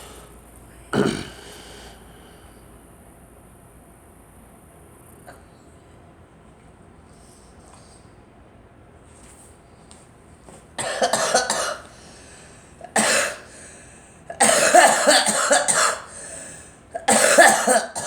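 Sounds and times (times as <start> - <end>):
girl coughing: 1.0 - 1.4, 10.8 - 11.9, 12.9 - 13.5, 14.3 - 16.3, 17.0 - 18.0.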